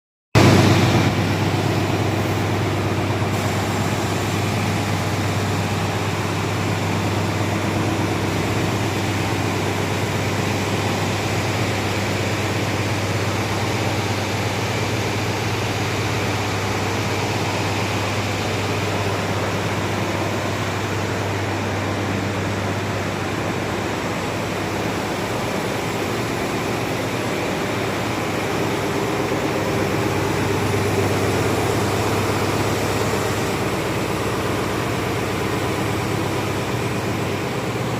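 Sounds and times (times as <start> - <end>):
sanding machine running: 0.4 - 22.6, 24.2 - 37.9.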